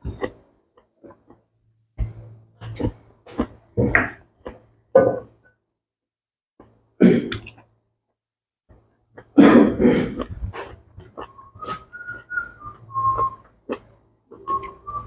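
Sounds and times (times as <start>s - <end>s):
person chewing food: 10.0s - 12.2s
person whistling a tune: 11.2s - 13.5s, 14.4s - 15.0s.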